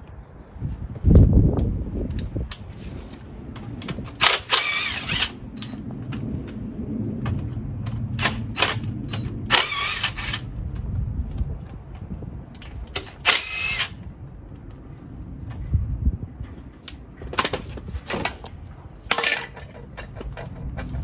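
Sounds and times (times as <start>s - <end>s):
rapid ratcheting: 4.1s - 5.4s, 8.2s - 10.5s, 12.9s - 14.0s
tool clicks and knocks: 12.6s - 14.0s, 16.9s - 21.0s.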